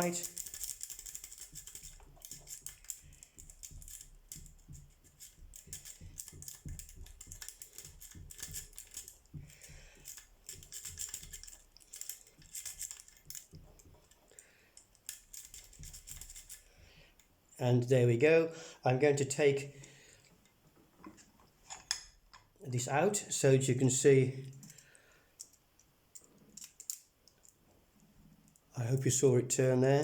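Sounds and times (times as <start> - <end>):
lock pick clicking and rattling: 0.0 - 17.3, 24.5 - 27.6.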